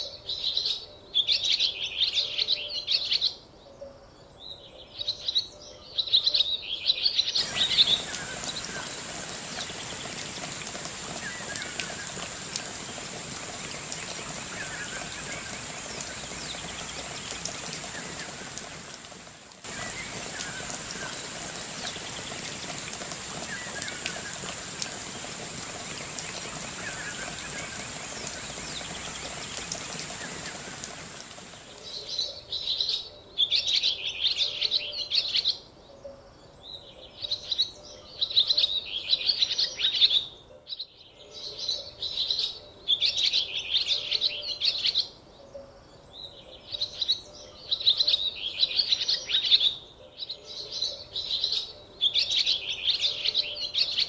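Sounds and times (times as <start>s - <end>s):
steady hiss with high whine: 7.4s - 32.0s
birds chirping: 7.4s - 32.3s.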